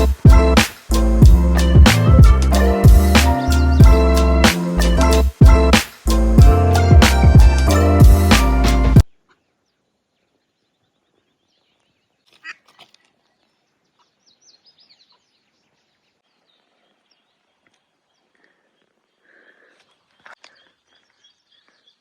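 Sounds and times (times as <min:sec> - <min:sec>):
background music: 0:00.0 - 0:09.0.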